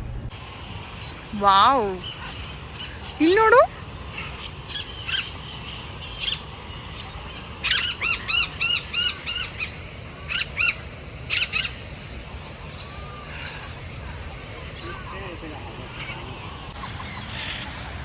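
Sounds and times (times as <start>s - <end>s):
bird giving harsh calls: 0.8s - 12.1s.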